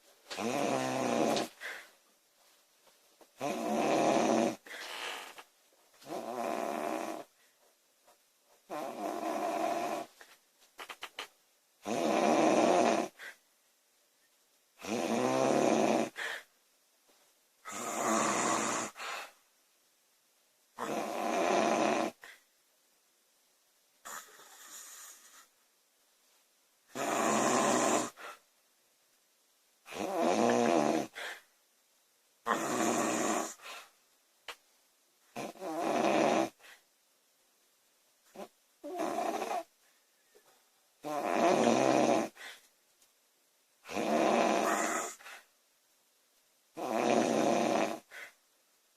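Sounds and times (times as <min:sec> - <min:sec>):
woman snoring loudly: 0:00.4 - 0:01.6, 0:03.4 - 0:04.7, 0:06.0 - 0:07.3, 0:08.7 - 0:10.1, 0:11.8 - 0:13.2, 0:14.8 - 0:16.4, 0:17.7 - 0:19.0, 0:20.8 - 0:22.3, 0:26.9 - 0:28.3, 0:29.9 - 0:31.4, 0:32.4 - 0:33.6, 0:35.4 - 0:36.6, 0:38.4 - 0:39.7, 0:41.0 - 0:42.4, 0:43.9 - 0:45.2, 0:46.8 - 0:48.2
soft breath: 0:01.5 - 0:02.1, 0:04.6 - 0:05.5, 0:31.1 - 0:31.6, 0:42.3 - 0:42.7, 0:48.0 - 0:48.5.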